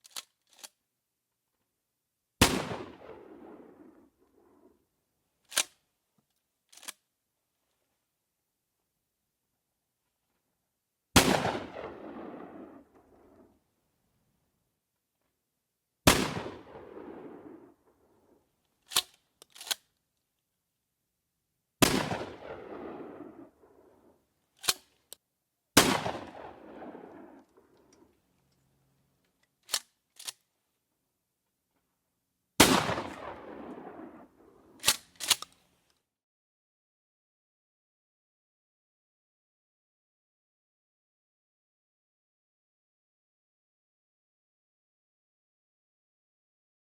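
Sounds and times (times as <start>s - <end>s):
gunshots: 16.1s - 17.3s, 21.8s - 23.2s, 25.8s - 27.2s, 32.6s - 34.0s.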